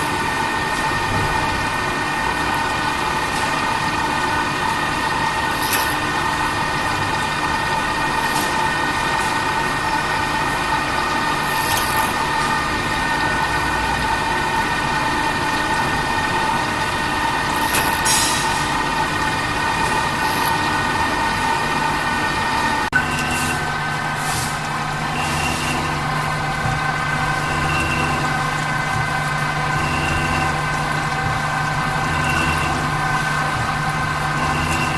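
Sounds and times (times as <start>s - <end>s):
milling machine whine: 0.0s - 34.9s
high-pitched squeaks: 5.4s - 6.0s, 10.4s - 13.9s, 17.4s - 21.7s, 22.9s - 34.9s.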